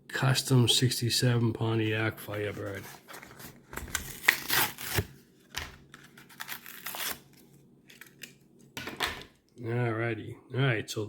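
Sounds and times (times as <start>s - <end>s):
card and plastic tearing: 2.2s - 8.4s.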